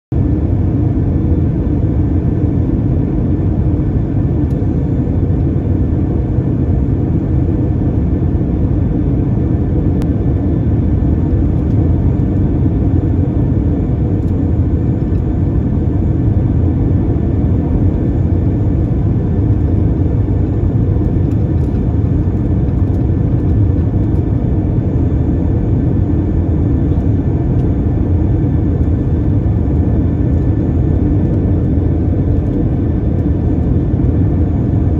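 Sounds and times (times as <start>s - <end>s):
airliner cabin engine rumble: 0.1s - 34.9s.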